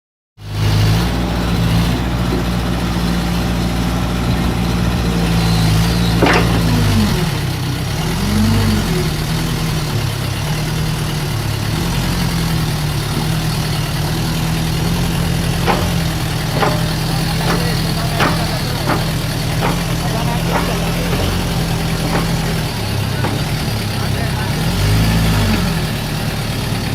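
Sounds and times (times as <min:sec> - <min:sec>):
excavator diesel engine running: 0:00.4 - 0:26.9
sharp metallic knocks: 0:01.8 - 0:07.9, 0:14.8 - 0:24.2.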